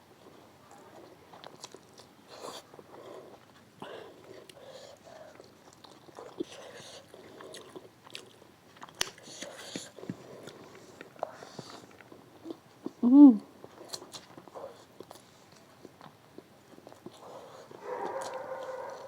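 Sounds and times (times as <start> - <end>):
person chewing food: 1.0 - 13.0, 13.6 - 19.0.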